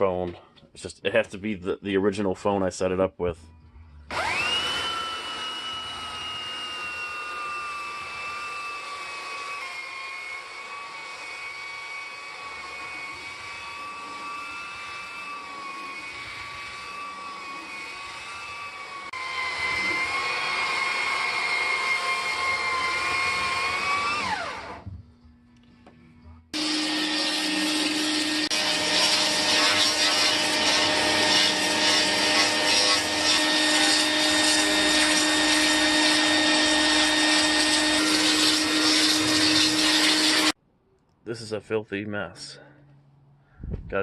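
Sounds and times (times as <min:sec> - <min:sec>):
power tool motor whining: 0:04.1 - 0:24.9, 0:26.6 - 0:40.6
motor-driven tool rushing: 0:26.6 - 0:40.6.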